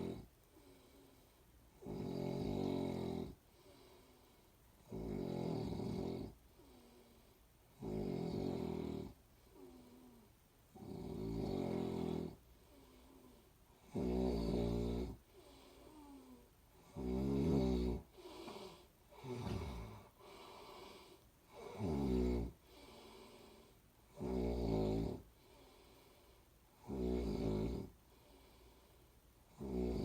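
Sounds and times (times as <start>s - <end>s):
person snoring: 0.0s - 4.2s, 4.8s - 28.7s, 29.5s - 30.0s
soft breath out: 18.1s - 21.3s.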